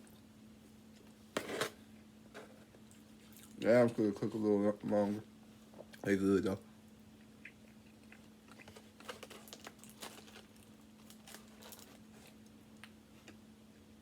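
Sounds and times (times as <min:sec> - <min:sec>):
low steady hum: 0:00.0 - 0:14.0
person chewing: 0:07.2 - 0:09.2.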